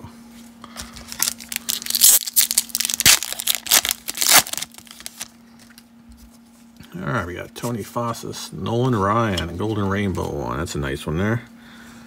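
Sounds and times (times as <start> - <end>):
wrapper tearing and crinkling: 1.0 - 5.3.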